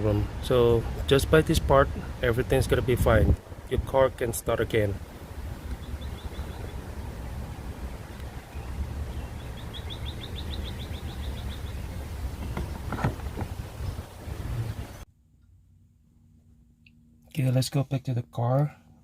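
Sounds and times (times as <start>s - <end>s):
steady low rumble: 0.0s - 17.5s
bird trilling chirps: 5.6s - 7.0s, 8.3s - 12.9s.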